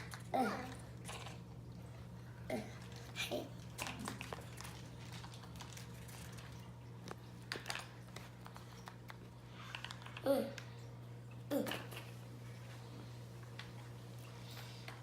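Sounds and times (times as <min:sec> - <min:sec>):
plastic toys and packaging rustling: 0:02.5 - 0:10.8.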